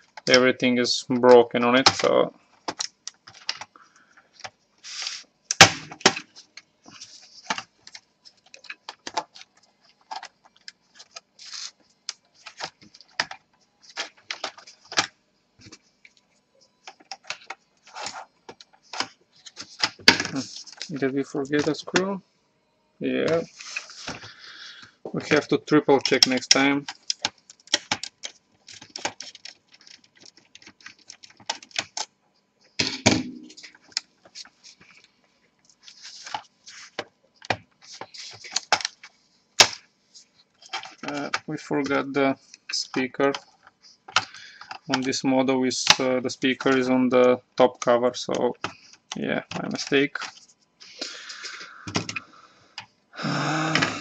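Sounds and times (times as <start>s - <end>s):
laptop plastic case clicking and rattling: 7.5s - 11.2s, 12.1s - 15.7s, 16.8s - 20.3s, 26.1s - 32.1s, 36.3s - 39.8s
sharp plastic crack: 39.6s - 39.8s.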